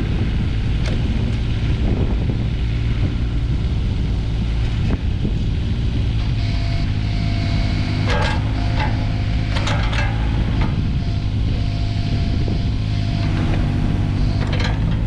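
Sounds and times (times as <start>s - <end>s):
diesel engine running: 0.0s - 15.0s
short squeals: 6.2s - 15.0s.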